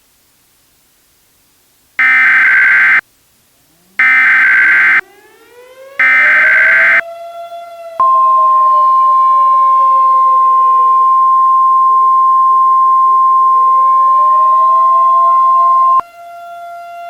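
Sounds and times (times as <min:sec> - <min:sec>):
digital data tone bursts: 0:02.0 - 0:03.0, 0:04.0 - 0:05.0, 0:06.0 - 0:07.0, 0:13.0 - 0:16.0
fire siren winding up: 0:02.0 - 0:03.0, 0:04.0 - 0:07.1, 0:08.0 - 0:16.2.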